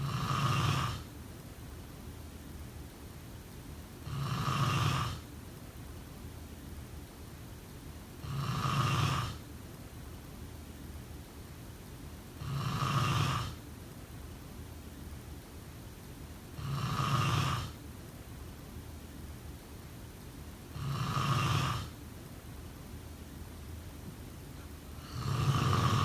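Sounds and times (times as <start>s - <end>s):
person snoring: 0.0s - 1.0s, 20.7s - 21.9s, 24.9s - 26.0s.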